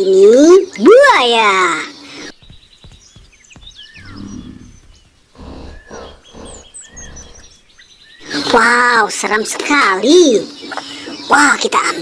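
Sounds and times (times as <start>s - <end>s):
birds chirping: 0.0s - 12.0s
crocodile growling: 4.0s - 7.7s.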